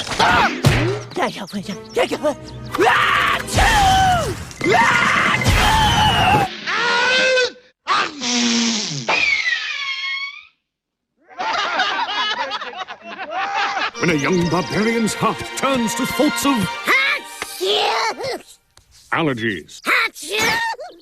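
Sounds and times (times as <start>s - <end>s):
cartoon voices: 2.2s - 9.4s, 16.7s - 18.6s, 19.8s - 21.0s
cartoon characters screaming: 2.7s - 8.5s, 9.1s - 10.6s, 20.2s - 21.0s.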